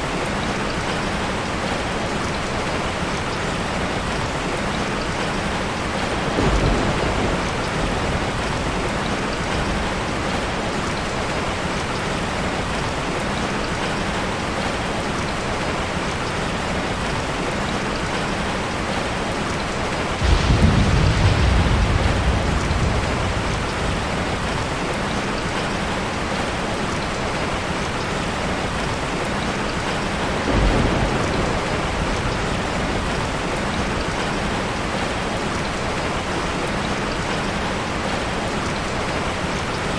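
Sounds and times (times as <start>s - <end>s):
heavy rain falling: 0.0s - 39.9s
thunder rumbling: 6.0s - 11.9s, 20.1s - 26.7s, 30.1s - 35.0s.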